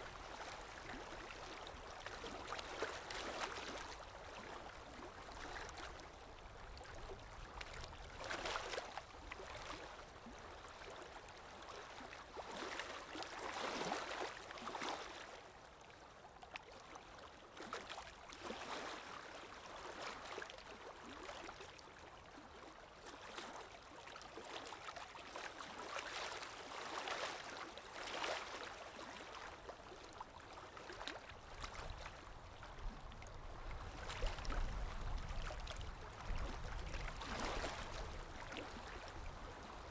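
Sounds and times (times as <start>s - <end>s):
stream gurgling: 25.7s - 39.9s.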